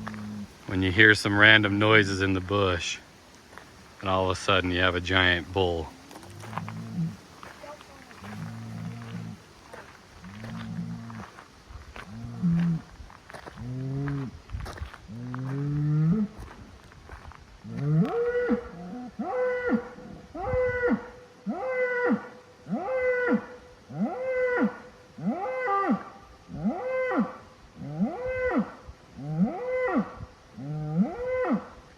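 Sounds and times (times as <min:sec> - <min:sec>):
large animal bellowing: 0:00.0 - 0:01.0, 0:05.1 - 0:07.2, 0:08.1 - 0:09.4, 0:10.2 - 0:11.3.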